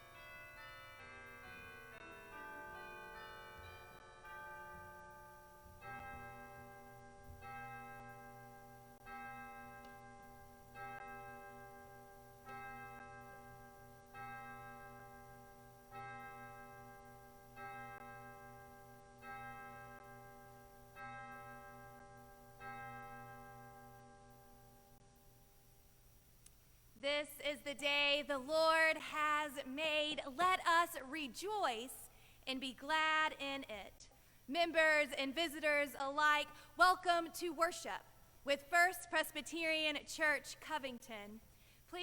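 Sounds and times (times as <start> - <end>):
peal of several bells: 0.0 - 25.1.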